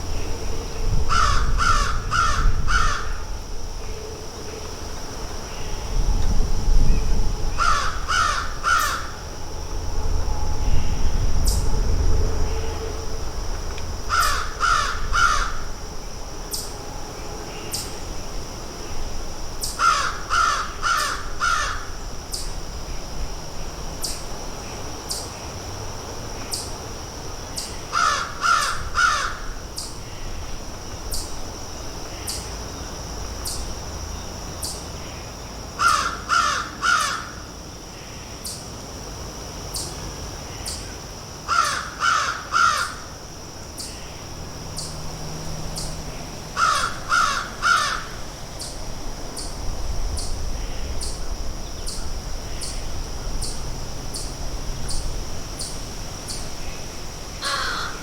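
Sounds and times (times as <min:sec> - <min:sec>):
crows cawing: 0:01.1 - 0:03.2, 0:07.6 - 0:09.2, 0:14.1 - 0:15.7, 0:19.8 - 0:21.9, 0:27.9 - 0:29.5, 0:35.8 - 0:37.4, 0:41.5 - 0:43.1, 0:46.6 - 0:48.2, 0:57.4 - 0:58.0.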